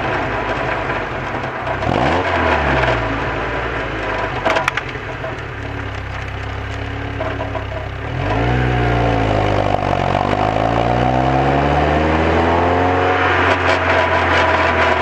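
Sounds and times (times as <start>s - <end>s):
car engine under throttle: 0.0s - 15.0s.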